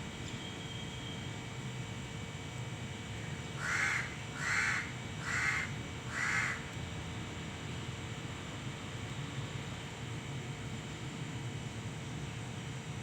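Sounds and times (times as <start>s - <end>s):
steady background hum: 0.0s - 13.0s
crow cawing: 3.6s - 6.7s.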